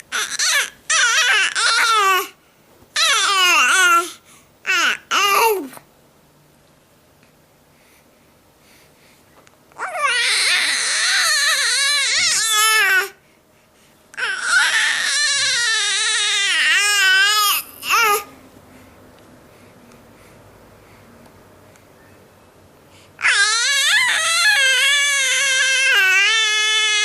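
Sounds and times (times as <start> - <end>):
baby crying: 0.1 - 2.4, 3.0 - 4.1, 9.8 - 13.2, 14.2 - 18.3, 23.2 - 27.0.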